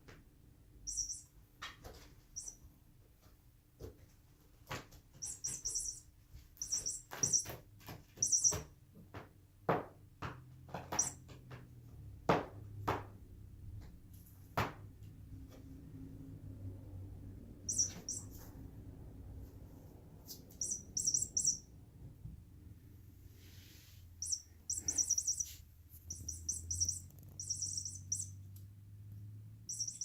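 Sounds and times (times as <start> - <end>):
toy bird chirping: 0.9 - 1.3, 2.4 - 2.6, 5.2 - 7.6, 8.2 - 8.7, 10.9 - 11.2, 17.7 - 18.5, 20.5 - 21.7, 24.2 - 28.4, 29.7 - 30.0.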